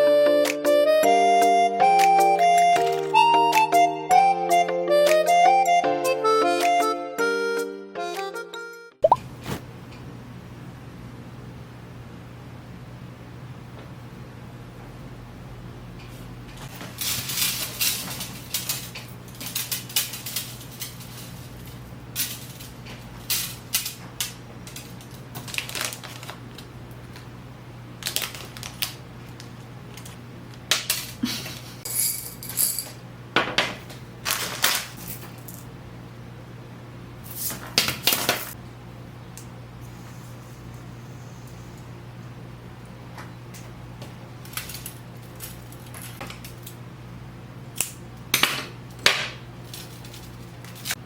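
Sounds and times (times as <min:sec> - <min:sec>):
steady low hum: 0:38.5 - 0:51.0.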